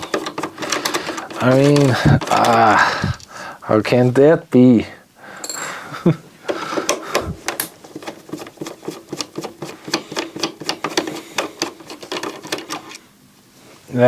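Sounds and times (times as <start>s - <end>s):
clicks taps and light scraping: 0.0s - 3.3s, 6.5s - 13.0s.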